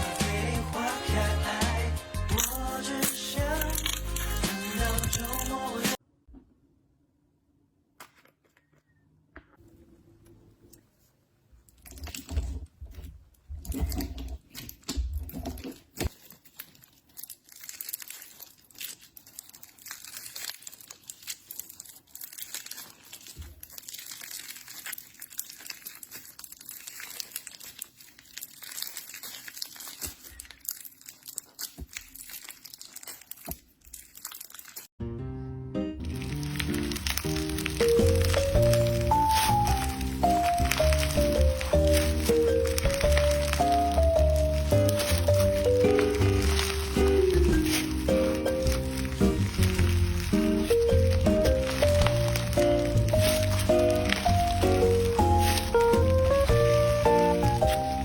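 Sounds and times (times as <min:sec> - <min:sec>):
slime crackling and popping: 0:02.3 - 0:05.6, 0:11.8 - 0:12.6, 0:13.6 - 0:34.9, 0:36.0 - 0:58.0.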